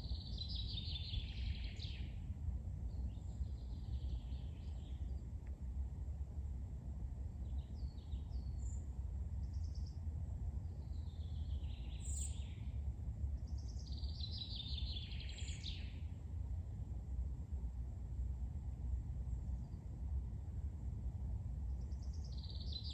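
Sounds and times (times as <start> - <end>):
trilled birdsong: 0.0 - 2.3, 2.9 - 5.4, 7.4 - 16.2, 21.7 - 22.9.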